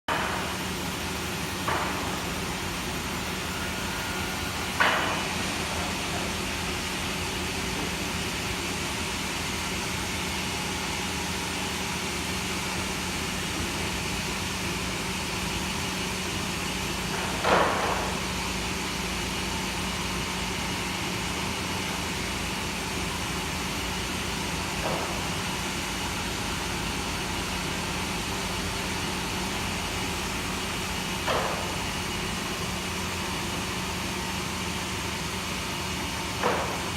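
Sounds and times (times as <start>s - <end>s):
sawmill machine hum: 0.1s - 17.2s.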